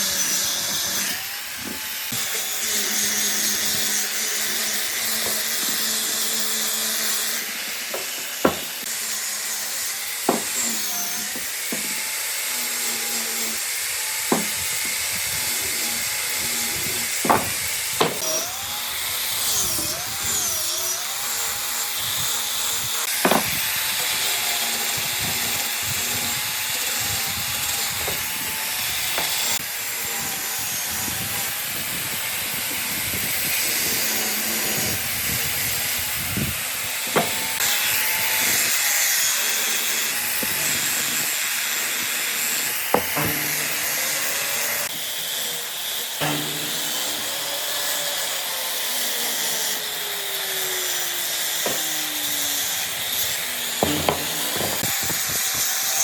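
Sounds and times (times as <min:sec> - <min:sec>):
power tools cutting wood: 0:00.0 - 0:56.0
sharp knocks: 0:07.9 - 0:08.7, 0:17.2 - 0:18.2, 0:23.2 - 0:23.6, 0:37.1 - 0:37.6, 0:42.9 - 0:44.0, 0:46.2 - 0:47.5, 0:53.8 - 0:55.2.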